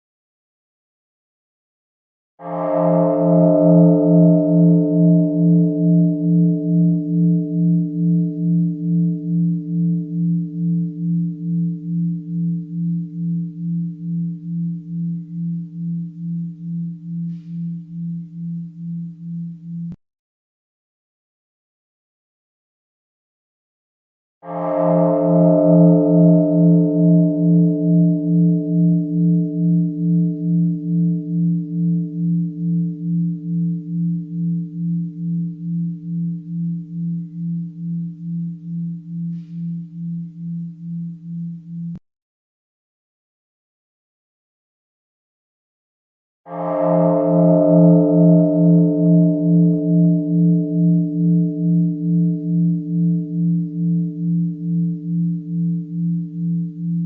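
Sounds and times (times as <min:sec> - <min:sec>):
singing bowl bell ringing: 0:02.4 - 0:20.0, 0:24.4 - 0:42.0, 0:46.5 - 0:57.0.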